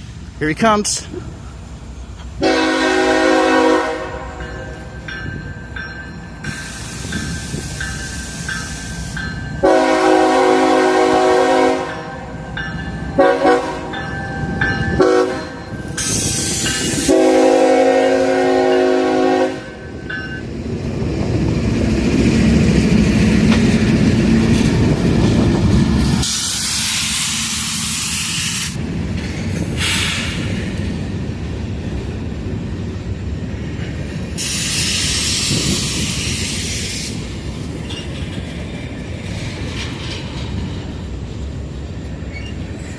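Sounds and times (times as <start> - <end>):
diesel locomotive rumbling: 0.0 - 42.9
locomotive horn blasts: 2.4 - 4.4, 9.6 - 12.3, 13.2 - 14.0, 14.9 - 15.6, 16.9 - 19.9
hiss bursts: 6.4 - 9.2, 16.0 - 17.3, 26.1 - 28.8, 29.7 - 30.6, 34.4 - 37.4
freight cars rail clatter: 37.6 - 41.2.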